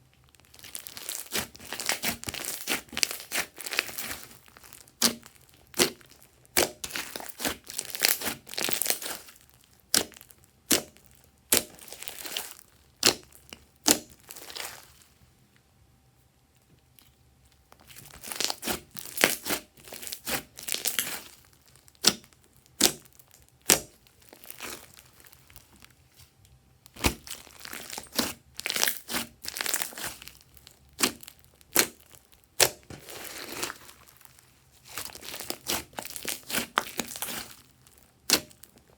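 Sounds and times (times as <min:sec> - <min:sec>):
slime squelching: 0:00.3 - 0:15.2, 0:16.9 - 0:38.9
slime snapping: 0:13.8 - 0:14.1, 0:22.0 - 0:23.9, 0:31.0 - 0:32.0, 0:32.6 - 0:32.8.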